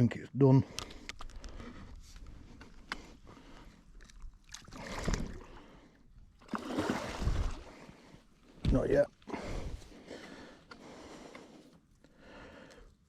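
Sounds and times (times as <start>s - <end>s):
water splashing and sloshing: 2.6s - 8.8s.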